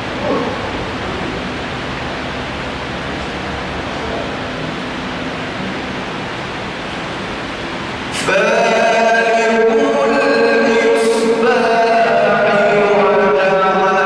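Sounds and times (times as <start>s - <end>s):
steady noisy hiss: 0.0s - 14.0s
man chanting recitation: 8.2s - 14.0s.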